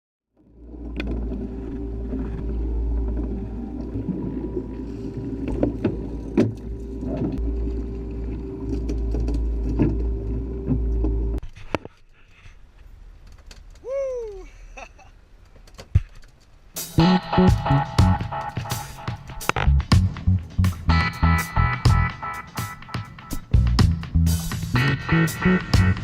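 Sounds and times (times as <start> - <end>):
boat engine drone: 0.4 - 11.4, 17.0 - 26.0.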